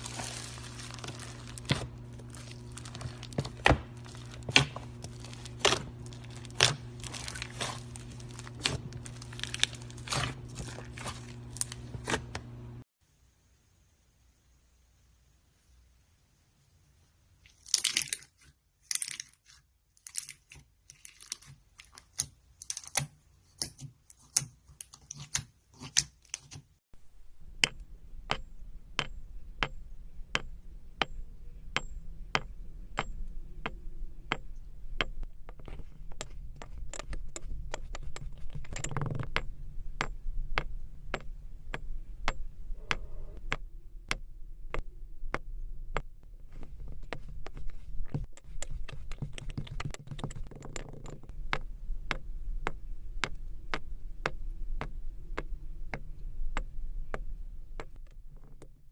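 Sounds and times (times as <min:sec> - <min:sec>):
slime crackling and popping: 0:00.0 - 0:12.2, 0:17.5 - 0:23.0
slime squelch: 0:00.0 - 0:12.4
low steady hum: 0:00.0 - 0:26.4, 0:27.0 - 0:58.9.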